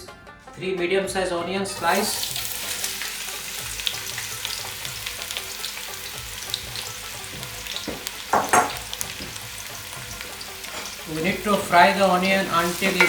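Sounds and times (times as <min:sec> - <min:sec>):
onions sizzling in hot oil: 0:01.8 - 0:13.0
sharp knocks: 0:07.4 - 0:09.4.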